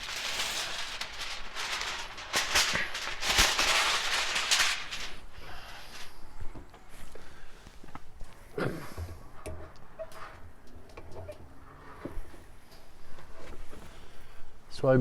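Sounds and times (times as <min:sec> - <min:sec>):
charcoal fire crackling and popping: 0:00.0 - 0:06.3
steady hiss: 0:00.0 - 0:07.9.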